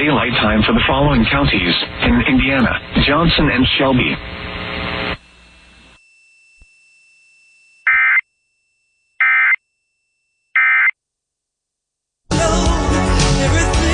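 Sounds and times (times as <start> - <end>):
warbling digital data tones: 7.8 - 8.3.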